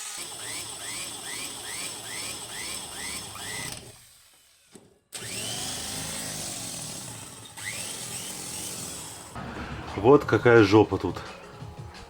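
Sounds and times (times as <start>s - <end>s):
power drill chirping: 0.0s - 9.4s.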